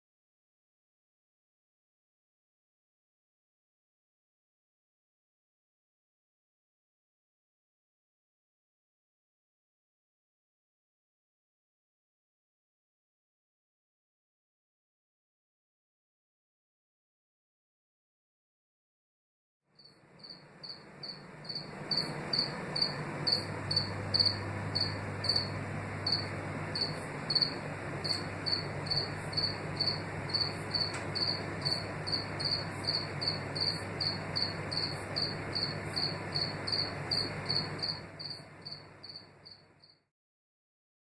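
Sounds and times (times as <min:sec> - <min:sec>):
low background hiss and hum: 0:19.8 - 0:39.9
cricket chirping: 0:19.8 - 0:40.0.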